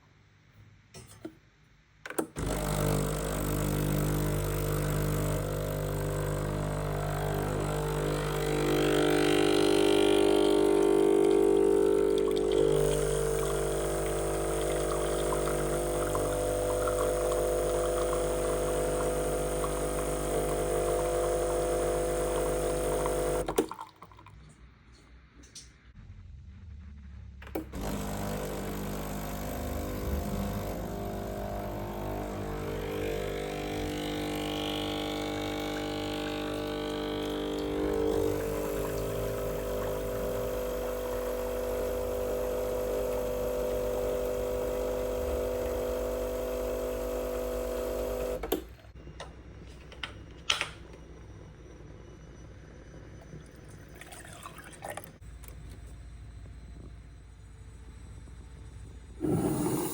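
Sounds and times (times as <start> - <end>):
espresso machine humming and hissing: 2.4 - 23.7, 27.7 - 48.8, 59.1 - 59.9.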